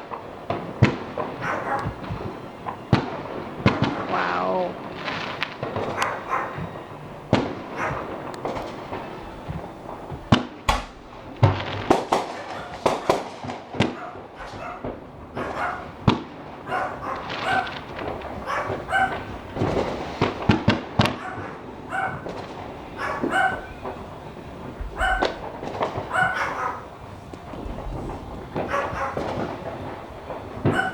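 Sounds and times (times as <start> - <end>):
fireworks bangs and crackles: 0.0 - 30.9
dog yipping and barking: 1.4 - 2.0, 5.9 - 6.7, 7.7 - 8.1, 13.8 - 15.9, 16.6 - 17.8, 18.4 - 19.3, 21.1 - 22.3, 23.0 - 23.8, 25.0 - 25.4, 26.1 - 26.9, 28.7 - 29.3, 30.7 - 30.9.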